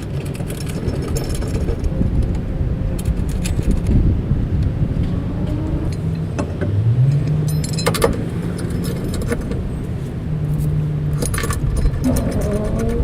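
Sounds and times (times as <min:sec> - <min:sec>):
metal hardware clinking and rattling: 0:00.0 - 0:02.3, 0:02.9 - 0:04.1, 0:06.4 - 0:09.8, 0:10.6 - 0:13.0
steady low rumble: 0:00.0 - 0:13.0.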